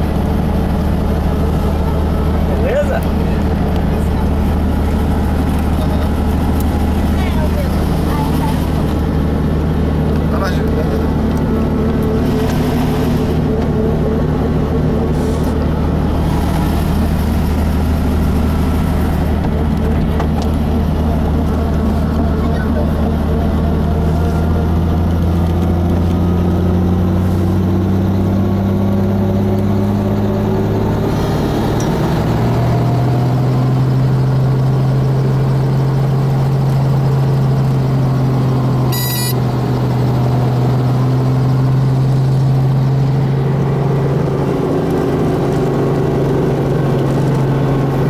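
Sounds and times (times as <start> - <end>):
sharp click-like beep: 38.9 - 39.4.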